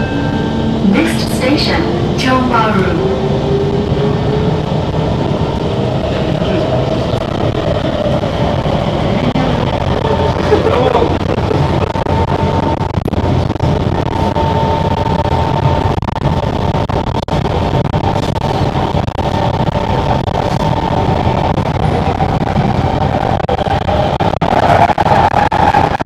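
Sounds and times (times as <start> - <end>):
high-pitched whine: 0.0 - 26.0
train rumble: 0.0 - 26.0.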